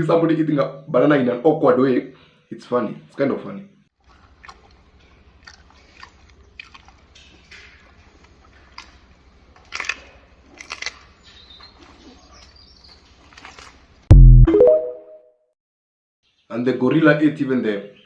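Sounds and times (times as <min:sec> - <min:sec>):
gorilla chewing banana: 0:04.0 - 0:13.8.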